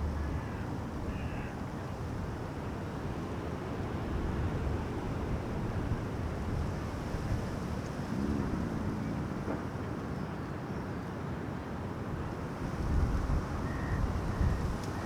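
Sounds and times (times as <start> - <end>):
low rumbling wash: 0.0 - 10.1
wind on microphone: 12.7 - 15.0.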